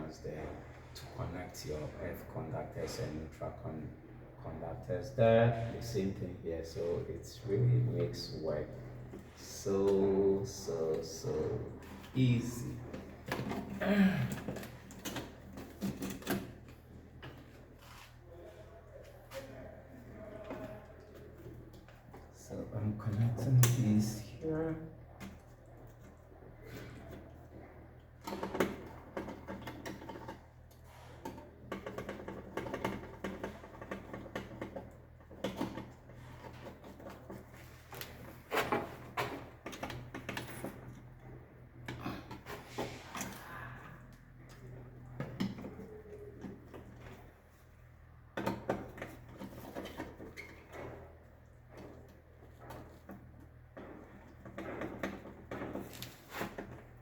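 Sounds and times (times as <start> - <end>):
clicks taps and scrapes of hand work: 12.8 - 18.2, 25.1 - 43.4, 44.0 - 57.0.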